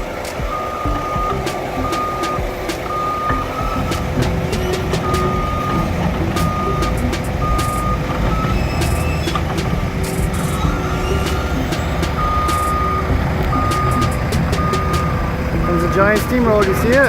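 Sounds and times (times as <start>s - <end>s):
diesel engine rumble: 0.0s - 17.0s
machinery clanks and clicks: 0.0s - 17.0s
reversing alarm beeping: 0.0s - 17.0s.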